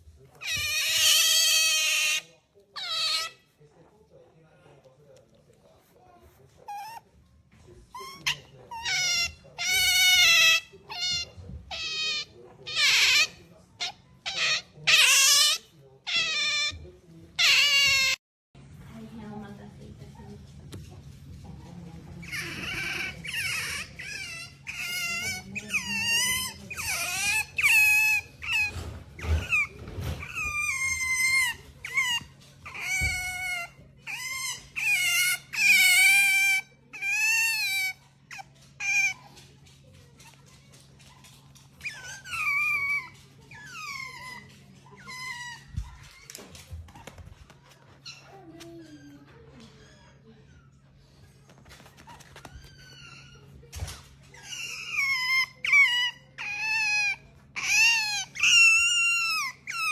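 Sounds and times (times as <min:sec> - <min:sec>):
otter squeaking calls: 0:22.2 - 0:39.3, 0:54.4 - 0:59.9.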